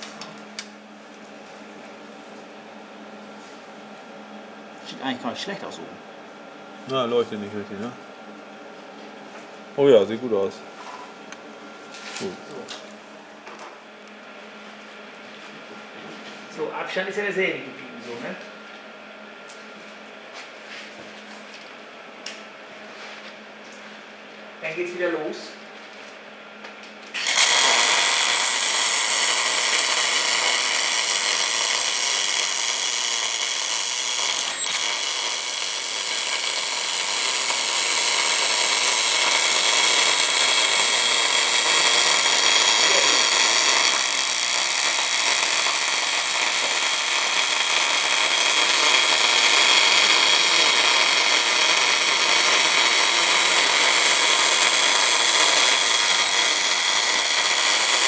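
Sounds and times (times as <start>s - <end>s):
welding arc hissing and crackling: 27.1s - 58.0s.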